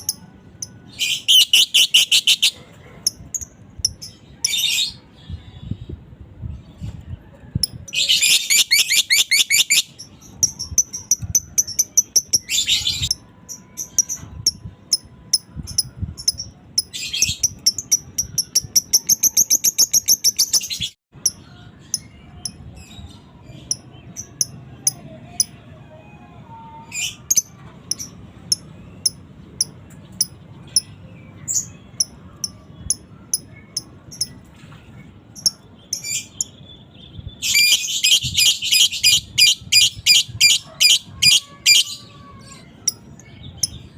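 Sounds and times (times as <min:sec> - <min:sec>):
lovebird chirping: 0:00.0 - 0:05.1, 0:07.6 - 0:25.5.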